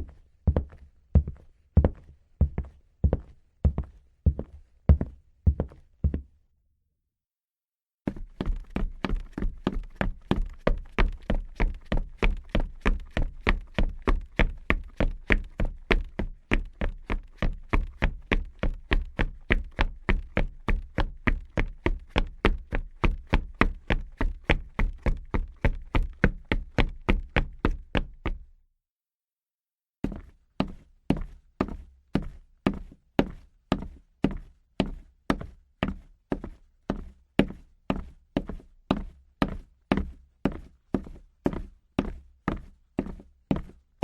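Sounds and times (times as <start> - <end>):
quick footsteps on hard floor: 0.0 - 6.3.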